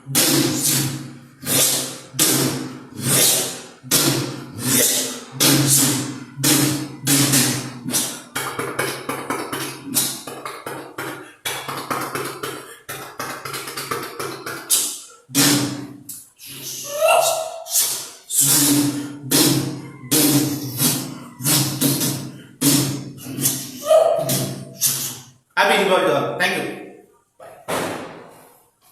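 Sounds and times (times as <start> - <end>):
person imitating firecracker bangs: 0.1 - 10.3.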